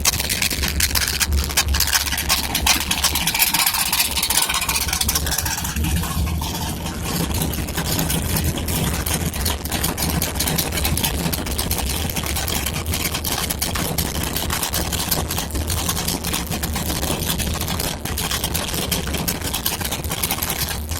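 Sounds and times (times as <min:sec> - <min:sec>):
engine idling: 0:00.0 - 0:12.4
rapid irregular ticking: 0:00.0 - 0:20.9.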